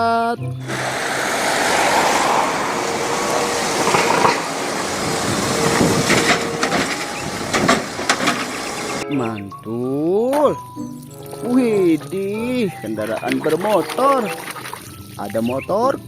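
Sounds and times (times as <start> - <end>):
water spraying hiss: 0.6 - 9.0
clicks and knocks: 2.9 - 9.0.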